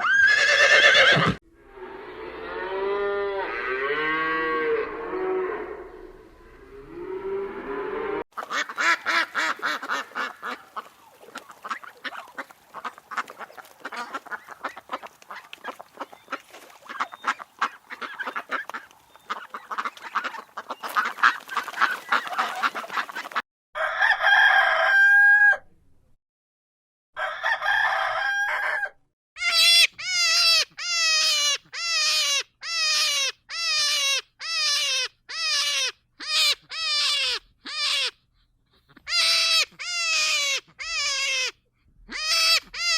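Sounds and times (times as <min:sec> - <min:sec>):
long drawn-out hen calls: 0:00.0 - 0:25.7, 0:27.2 - 0:38.2, 0:38.8 - 0:42.9
hens clucking: 0:08.4 - 0:23.4.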